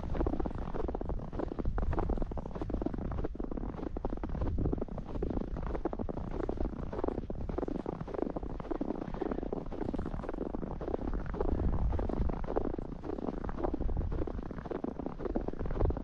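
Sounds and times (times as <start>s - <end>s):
footsteps crunching in snow: 0.0s - 16.0s
wind rumble on microphone: 0.0s - 16.0s.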